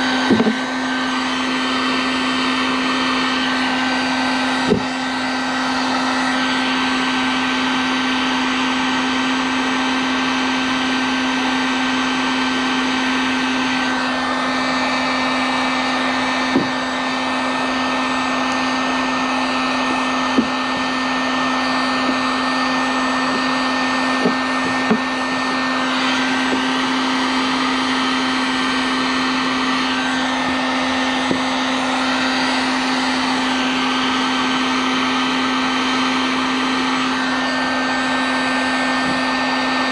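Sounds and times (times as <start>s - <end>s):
heat gun humming: 0.0s - 39.9s.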